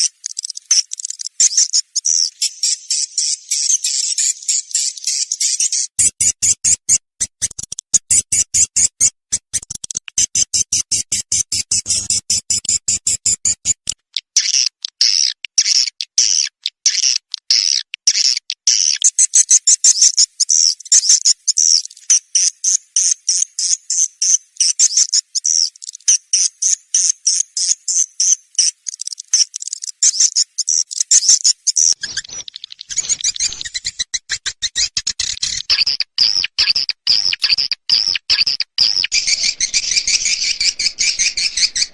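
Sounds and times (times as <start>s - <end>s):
deeper pulsing: 39.1s - 41.9s
high-pitched swiftlet chirps: 39.1s - 41.9s.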